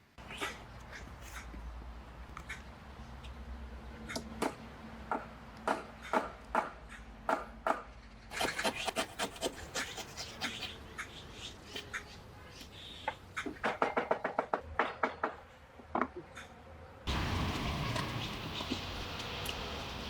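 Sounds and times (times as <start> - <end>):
scraping strokes on wood: 8.3 - 10.8.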